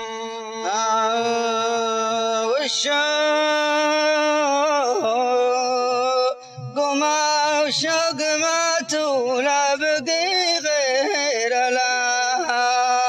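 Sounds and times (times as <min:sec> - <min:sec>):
men singing unaccompanied: 0:00.0 - 0:13.0.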